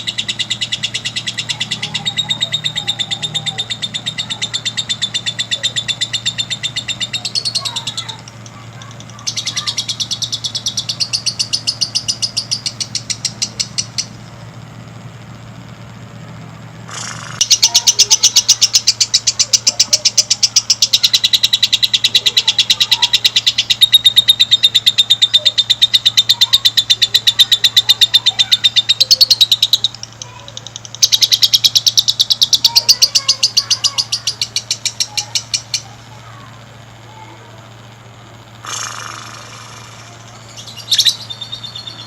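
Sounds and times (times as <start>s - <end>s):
lovebird chattering song: 0.0s - 15.7s, 16.8s - 42.0s.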